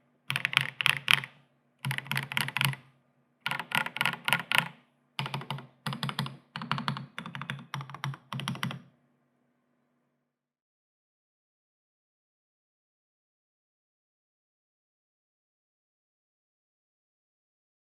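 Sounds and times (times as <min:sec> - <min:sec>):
mechanical keyboard typing: 0:00.3 - 0:02.8, 0:03.5 - 0:08.9.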